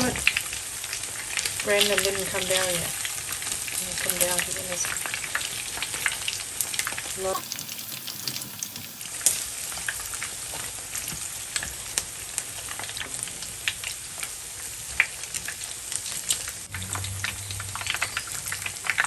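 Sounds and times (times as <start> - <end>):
deep-frying sizzle with pops: 0.0 - 19.0.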